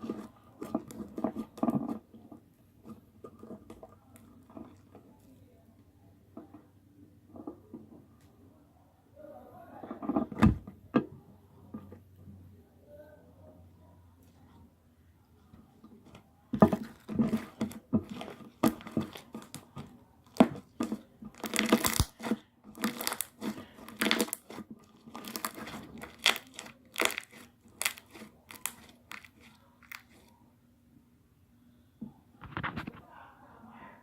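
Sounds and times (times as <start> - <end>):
slime squeezed by hand: 21.4 - 30.3.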